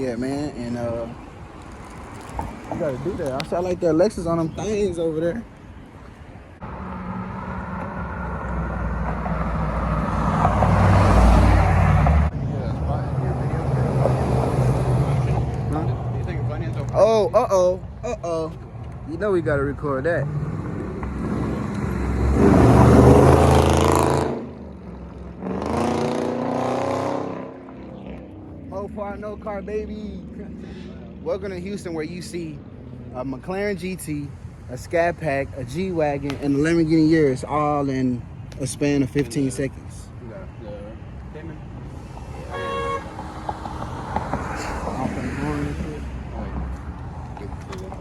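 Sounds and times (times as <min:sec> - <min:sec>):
cars accelerating past: 0:06.6 - 0:16.8, 0:18.7 - 0:33.2, 0:41.7 - 0:48.0
car engine humming: 0:27.3 - 0:48.0.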